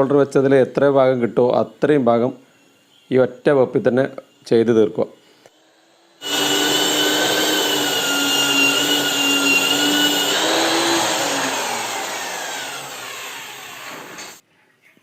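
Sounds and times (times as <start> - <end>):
wall sander whining: 5.6 - 14.4.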